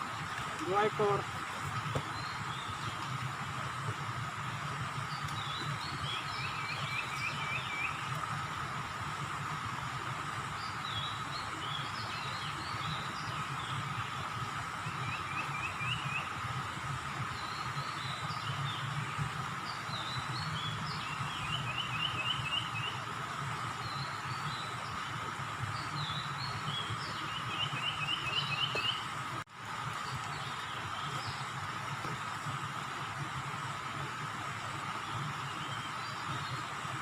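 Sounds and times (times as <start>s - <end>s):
small birds chirping: 17.3s - 37.0s.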